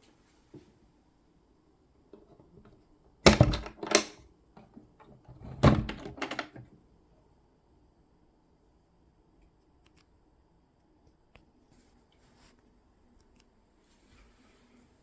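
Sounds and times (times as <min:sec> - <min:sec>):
hard objects clunking and rattling: 0:02.2 - 0:06.7.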